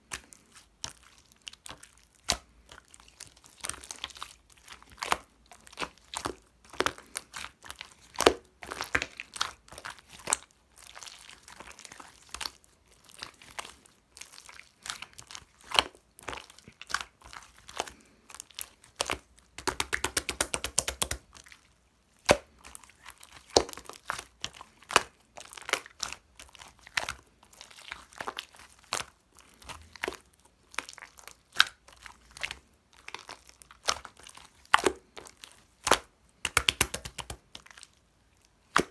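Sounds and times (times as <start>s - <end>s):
slime popping and clicking by hand: 19.0s - 21.3s, 35.8s - 37.4s.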